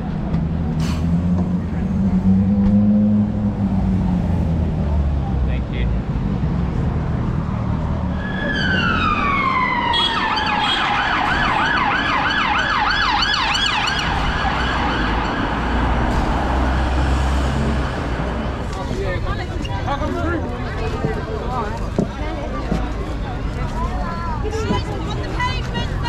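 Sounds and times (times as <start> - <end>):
road traffic rumble: 0.0 - 26.0
emergency vehicle siren: 8.0 - 18.5.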